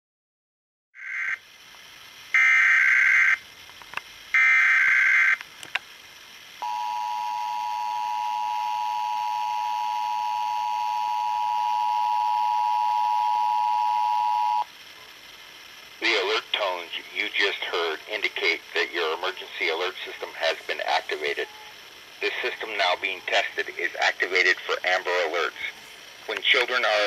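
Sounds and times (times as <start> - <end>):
harsh digital data bursts: 2.4 - 3.5, 4.4 - 5.4, 15.8 - 27.0
two-tone attention signal: 6.6 - 14.6.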